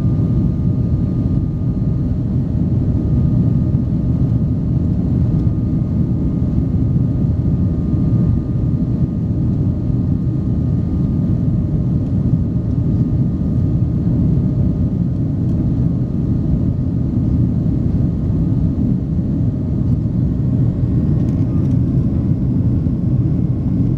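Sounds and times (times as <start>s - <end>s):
faint constant whine: 0.0s - 23.9s
jet engines roaring: 12.5s - 23.9s.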